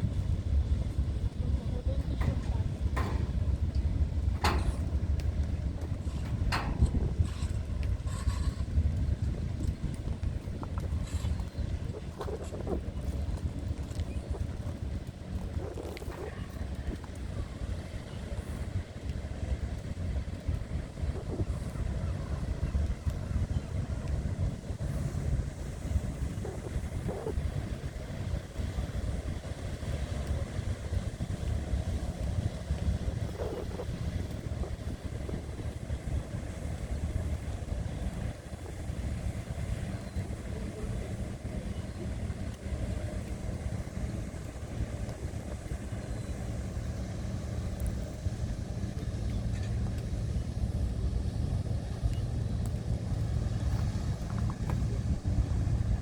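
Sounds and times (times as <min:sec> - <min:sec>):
ship engine droning: 0:00.0 - 0:56.0.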